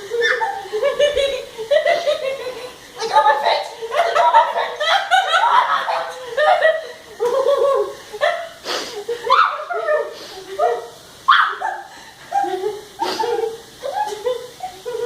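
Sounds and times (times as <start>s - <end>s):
girl yelping and laughing: 0.0s - 15.0s.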